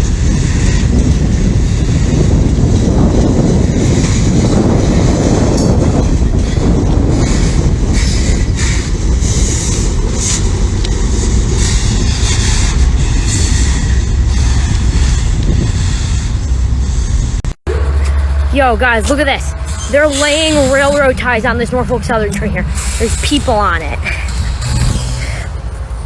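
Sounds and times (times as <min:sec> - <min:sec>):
train wheels rumbling on rails: 0:00.0 - 0:26.0.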